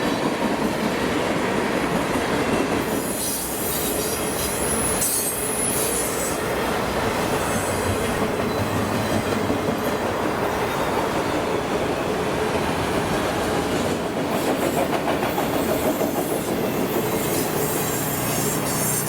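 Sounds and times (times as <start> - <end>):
train wheels clattering over rail joints: 7.1 - 19.0.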